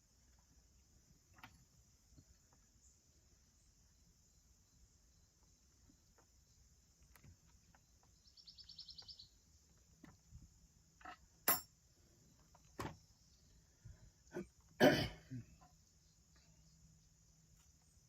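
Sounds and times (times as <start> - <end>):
insect chirring: 0.0 - 14.8, 15.4 - 18.0
sharp clicks and clinks: 11.0 - 11.7.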